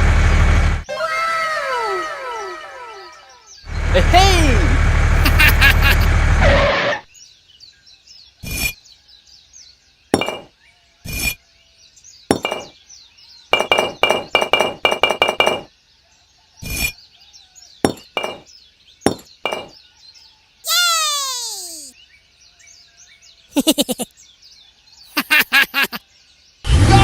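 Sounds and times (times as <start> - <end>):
faint bird chirps: 7.1 - 13.7, 15.9 - 26.7.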